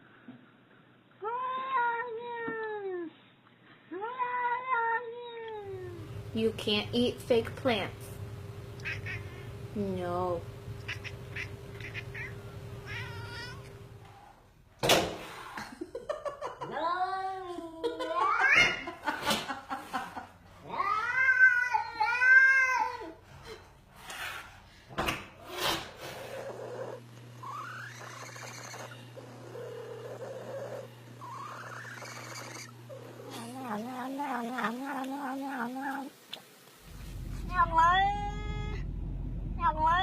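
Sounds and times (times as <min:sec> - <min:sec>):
cats yowling and meowing: 0:01.2 - 0:03.1, 0:04.0 - 0:06.0, 0:10.9 - 0:13.8, 0:20.6 - 0:23.2.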